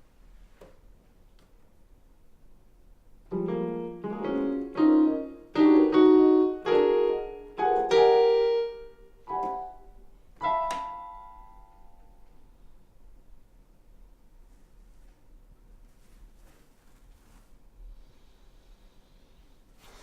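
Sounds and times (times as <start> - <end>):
piano chords: 3.3 - 12.6.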